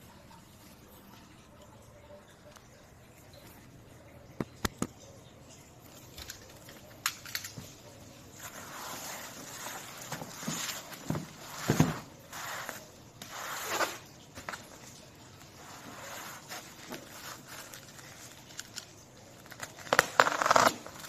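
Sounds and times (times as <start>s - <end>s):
packaging rustling and scraping: 8.4s - 14.8s, 15.5s - 21.0s.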